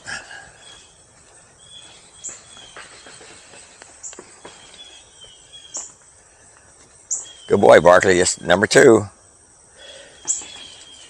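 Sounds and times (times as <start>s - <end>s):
faint insect hum: 0.0s - 11.0s.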